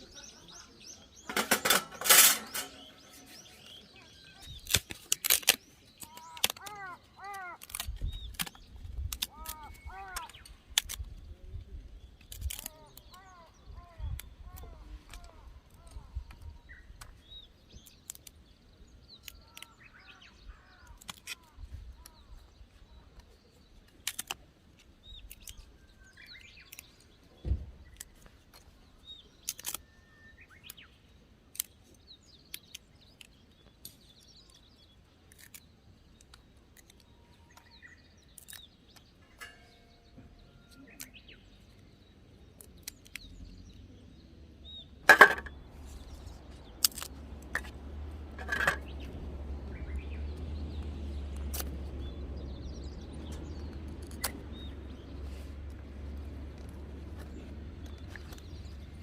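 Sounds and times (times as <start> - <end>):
small birds chirping: 0.0 - 59.0
sharp clicks and knocks: 1.2 - 3.5, 45.1 - 45.6, 46.7 - 49.2
loud clatter: 1.3 - 3.0.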